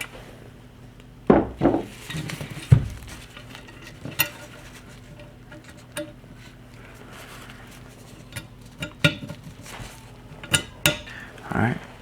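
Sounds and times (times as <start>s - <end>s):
dull knock: 1.3s - 1.9s
metal rifle parts clinking: 2.0s - 11.3s.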